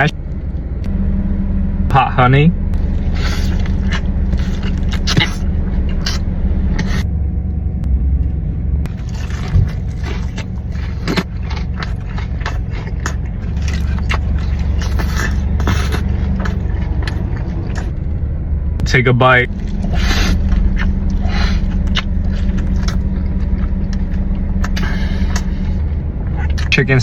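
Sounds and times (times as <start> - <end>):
low rumble: 0.0 - 27.0
chewing crispy food: 2.8 - 7.0, 8.9 - 18.0, 19.5 - 25.8, 26.4 - 26.8.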